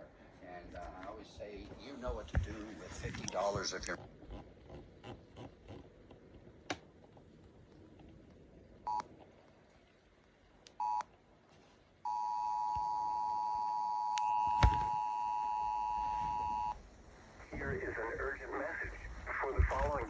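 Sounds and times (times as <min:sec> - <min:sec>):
short beeps: 0:10.8 - 0:11.1, 0:12.1 - 0:16.8
two-tone alert signal: 0:12.1 - 0:16.8.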